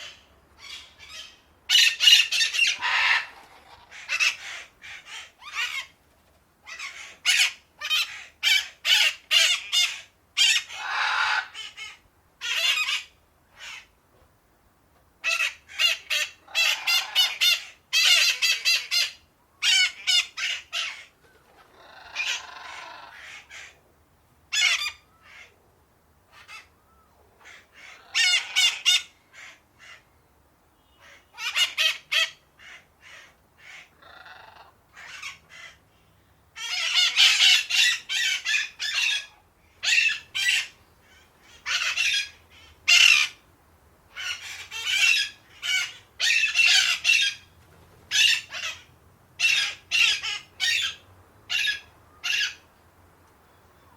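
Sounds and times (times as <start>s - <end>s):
parakeets squawking and chattering: 0.0s - 5.9s, 15.2s - 23.7s, 27.4s - 30.0s, 31.0s - 35.8s, 36.6s - 43.4s, 44.1s - 47.5s, 48.1s - 52.6s.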